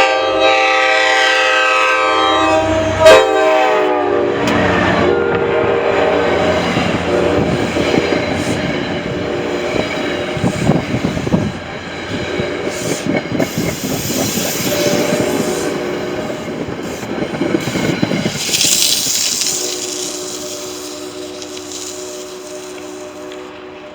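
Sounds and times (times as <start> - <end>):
train horn chord: 0.0 - 11.4, 14.6 - 16.6, 18.4 - 23.9
diesel train passing: 0.0 - 23.9
wheels clattering over rail joints: 6.6 - 23.5.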